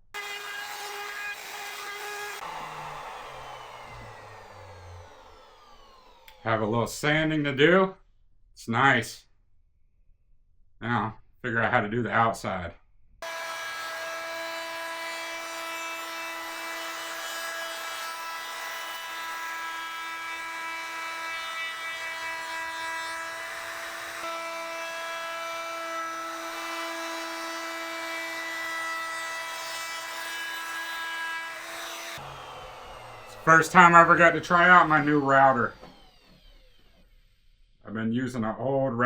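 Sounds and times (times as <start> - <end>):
electric wood router whining: 0.2 - 6.5, 13.2 - 37.8.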